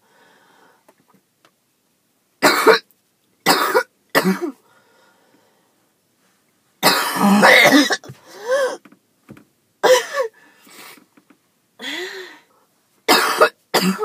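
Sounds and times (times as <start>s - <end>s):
woman hacking cough: 2.4s - 2.8s, 3.5s - 4.6s, 6.8s - 8.2s, 9.8s - 10.3s, 13.1s - 14.0s.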